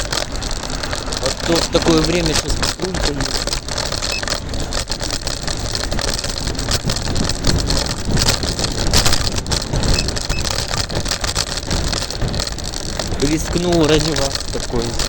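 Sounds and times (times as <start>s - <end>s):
road rumble: 0.0s - 15.0s
small rattles and knocks: 0.0s - 15.0s
wind buffeting microphone: 0.0s - 15.0s.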